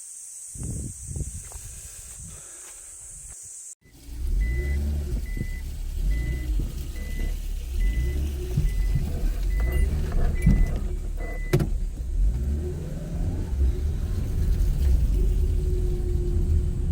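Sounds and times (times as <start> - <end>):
car engine running: 3.8 - 16.9.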